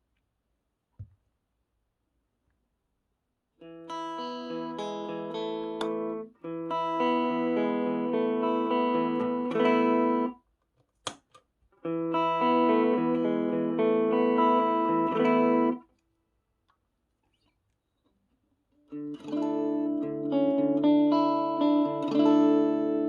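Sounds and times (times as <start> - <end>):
electric guitar chords: 3.6 - 10.4, 11.8 - 15.8, 18.9 - 23.0.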